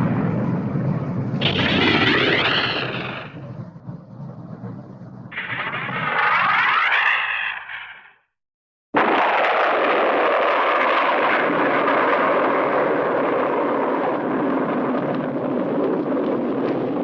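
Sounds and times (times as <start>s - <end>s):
cartoon rocket thruster rushing: 1.4s - 3.4s, 5.3s - 8.2s, 9.0s - 14.4s.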